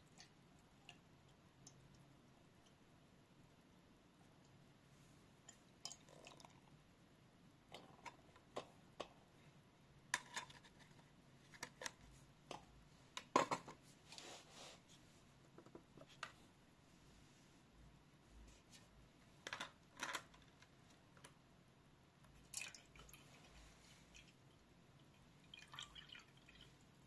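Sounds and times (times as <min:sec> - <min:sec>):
soft rustle: 0:13.8 - 0:15.4, 0:16.0 - 0:19.0, 0:23.2 - 0:24.3.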